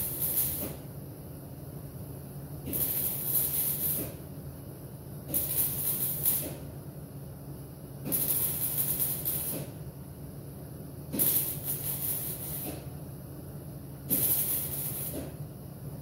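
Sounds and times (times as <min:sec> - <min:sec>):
welder arc crackle: 0:00.0 - 0:00.7, 0:02.7 - 0:04.1, 0:05.3 - 0:06.6, 0:08.1 - 0:09.7, 0:11.2 - 0:12.7, 0:14.1 - 0:15.2
steady low hum: 0:00.0 - 0:16.0.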